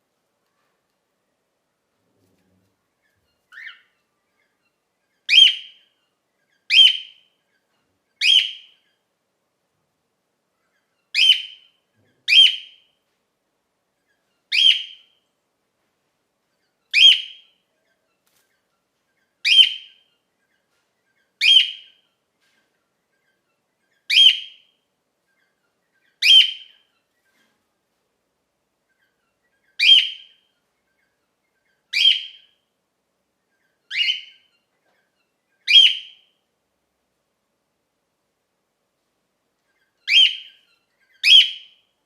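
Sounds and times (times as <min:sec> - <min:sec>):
cockatiel shrill contact calls: 0:31.9 - 0:32.4, 0:35.7 - 0:36.2, 0:40.1 - 0:40.6, 0:41.2 - 0:41.7.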